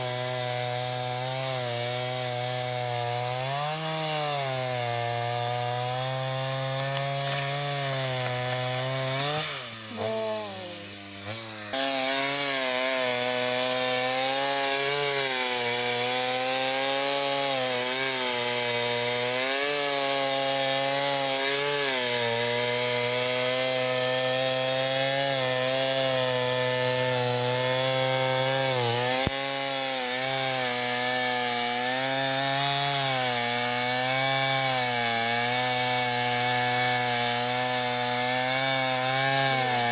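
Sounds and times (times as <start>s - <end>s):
power saw cutting wood: 0.0s - 39.9s.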